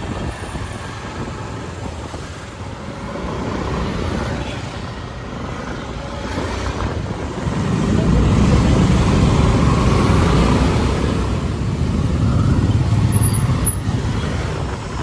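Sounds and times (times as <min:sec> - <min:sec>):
vehicle engine and road noise: 0:00.0 - 0:15.0.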